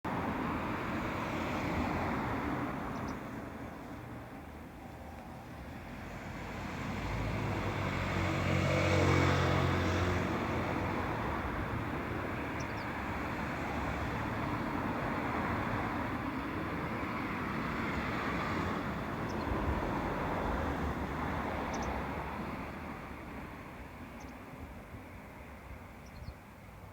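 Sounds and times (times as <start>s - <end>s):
passing vehicle engine rushing: 5.7s - 23.9s.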